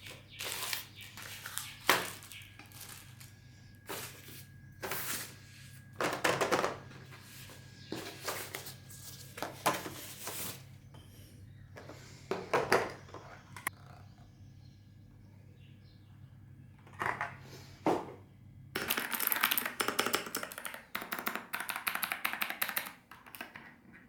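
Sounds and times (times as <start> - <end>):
packaging rustling and scraping: 0.0 - 10.8.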